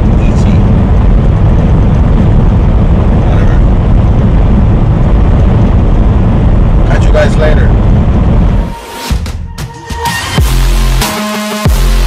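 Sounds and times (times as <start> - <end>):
truck engine rumble: 0.0 - 9.6
road noise: 0.0 - 11.1.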